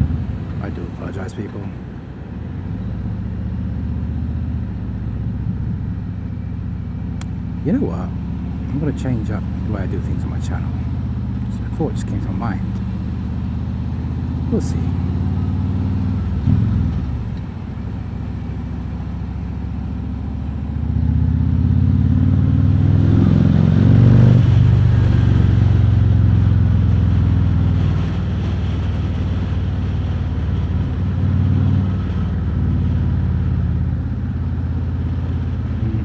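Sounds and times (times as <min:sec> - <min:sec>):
motorcycle engine accelerating: 0:02.8 - 0:36.0.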